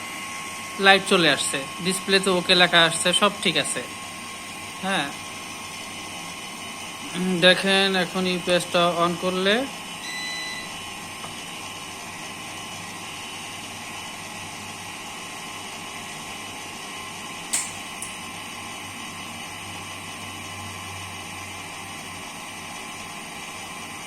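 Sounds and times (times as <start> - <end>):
cooling fan humming: 0.0 - 24.0
sharp click: 17.5 - 18.2.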